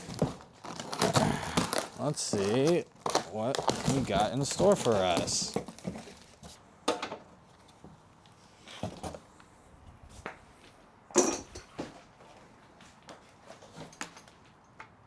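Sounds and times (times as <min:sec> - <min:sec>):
handling knocks and clatters: 0:00.0 - 0:07.2, 0:13.2 - 0:15.0.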